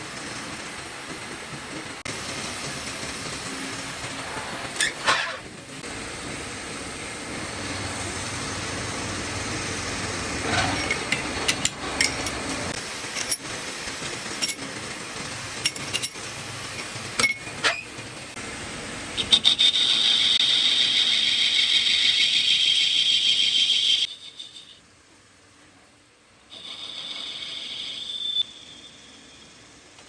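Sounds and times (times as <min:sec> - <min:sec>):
lathe running: 0:07.4 - 0:16.1, 0:19.2 - 0:24.8
hissing lathe cut: 0:19.2 - 0:24.1.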